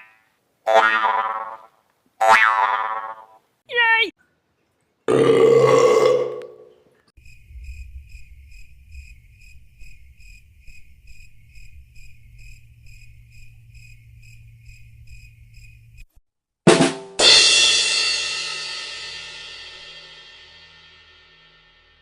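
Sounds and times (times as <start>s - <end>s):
crickets chirping: 7.2s - 16.2s
low hum: 7.2s - 16.2s.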